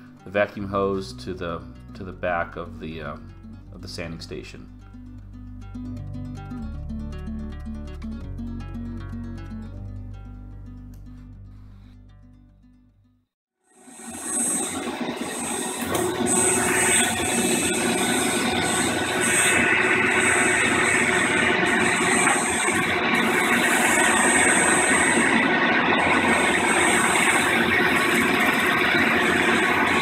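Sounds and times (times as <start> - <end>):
thin high whine: 13.7 - 30.0
shop vacuum running: 13.8 - 30.0.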